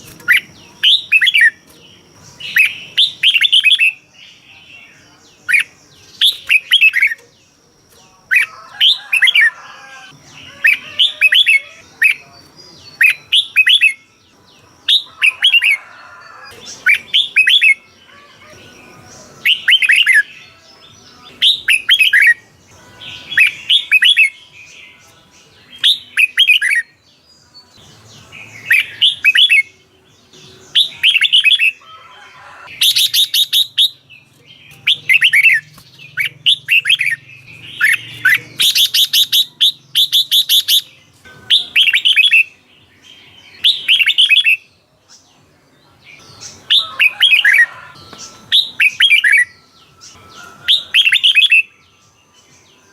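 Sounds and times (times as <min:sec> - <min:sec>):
bulbul singing: 0:00.0 - 0:52.9.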